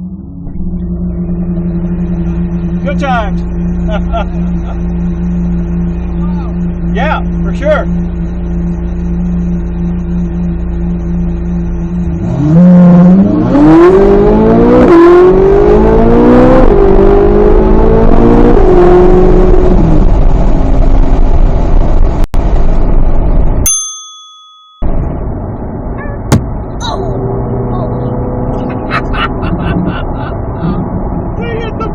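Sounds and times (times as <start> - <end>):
car engine accelerating: 0.0 - 23.6, 24.8 - 31.9.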